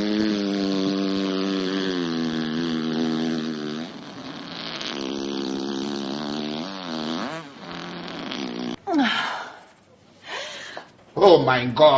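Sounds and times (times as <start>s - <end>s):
person imitating a fart: 0.0s - 9.0s.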